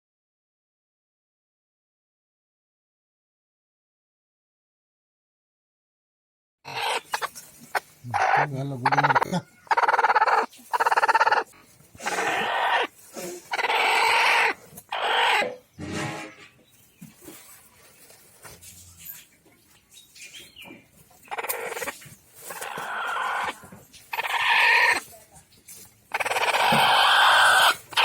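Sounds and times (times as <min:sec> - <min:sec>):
chicken calling: 0:06.7 - 0:18.2, 0:20.2 - 0:25.4, 0:26.1 - 0:28.0.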